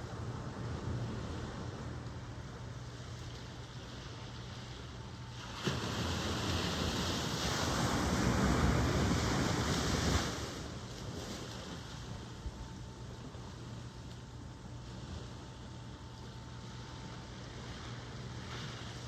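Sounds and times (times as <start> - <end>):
background rush of surf: 5.3 - 10.9.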